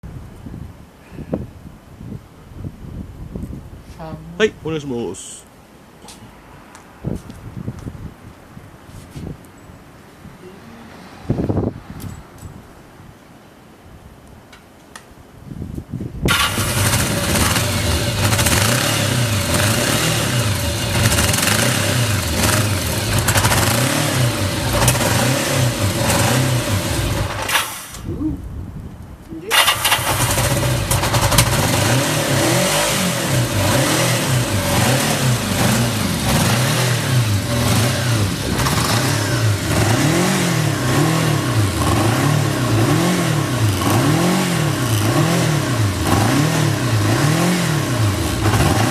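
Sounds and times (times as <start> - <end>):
motorcycle electric starter: 16.3 - 28.0, 29.5 - 31.9.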